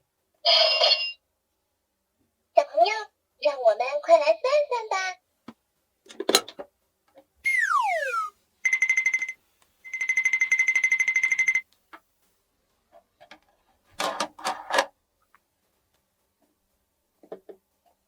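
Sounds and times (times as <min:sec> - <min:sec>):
falling whistle-like glide: 0:07.5 - 0:08.3
electronic alarm beeping: 0:07.5 - 0:08.9.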